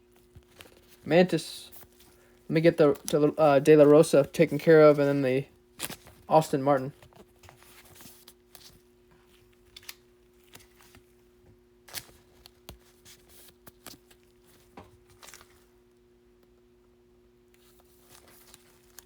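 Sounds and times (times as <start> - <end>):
faint steady hum: 0.0 - 19.0
trading cards clicking and rustling: 0.2 - 11.1.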